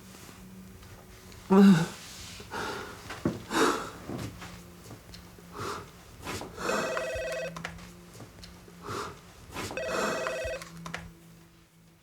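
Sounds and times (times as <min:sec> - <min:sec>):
telephone ringing: 0:06.6 - 0:07.8, 0:09.8 - 0:10.9.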